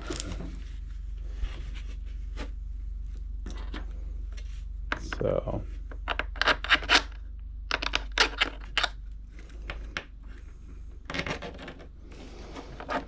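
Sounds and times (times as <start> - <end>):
steady low hum: 0.0 - 13.0
plastic parts clicking: 6.0 - 10.1.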